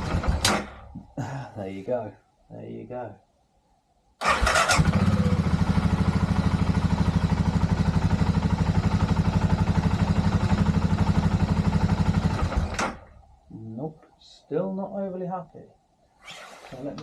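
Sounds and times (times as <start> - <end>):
motorcycle engine starting and idling: 0.0 - 0.9, 4.2 - 13.3.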